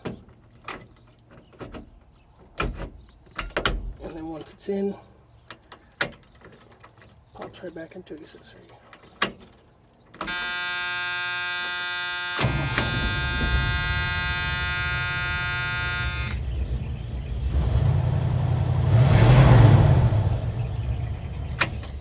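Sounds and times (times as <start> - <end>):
dashboard warning buzzer: 10.2 - 16.4
truck engine starting and rumbling: 10.3 - 22.0.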